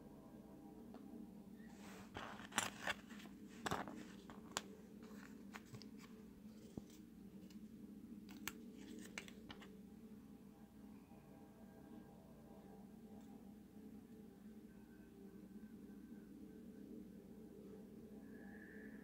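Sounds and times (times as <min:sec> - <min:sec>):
faint low hum: 0:00.0 - 0:19.0
scissors snipping paper: 0:08.3 - 0:09.7.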